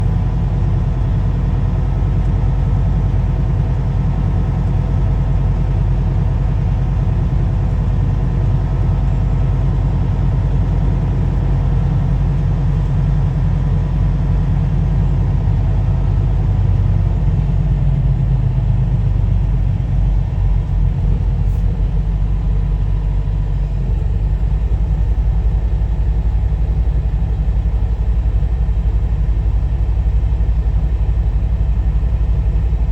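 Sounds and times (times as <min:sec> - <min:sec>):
car engine rumble: 0:00.0 - 0:32.9
road noise: 0:00.0 - 0:32.9.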